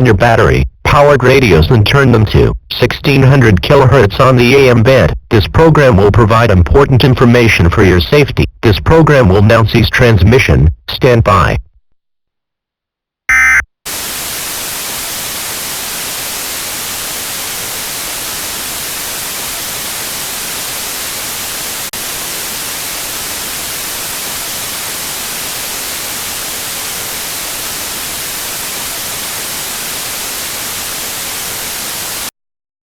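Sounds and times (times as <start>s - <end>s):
loud electronic blip: 13.3s - 13.7s
broadcast static hiss: 13.3s - 32.3s.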